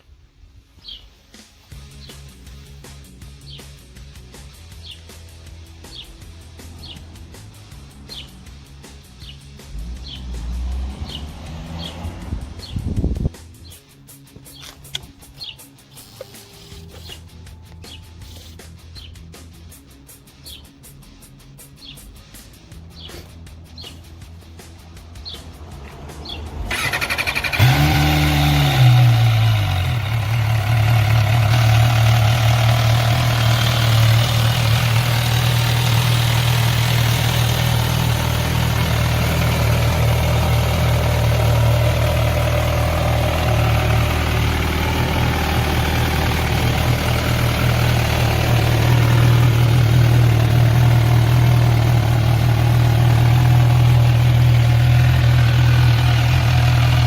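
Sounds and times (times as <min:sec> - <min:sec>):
motorcycle engine idling: 0:26.2 - 0:57.0.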